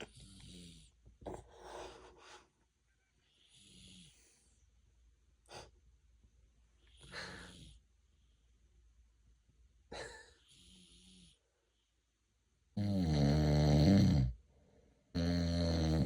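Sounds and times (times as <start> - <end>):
man snoring: 12.8 - 14.4, 15.1 - 16.0.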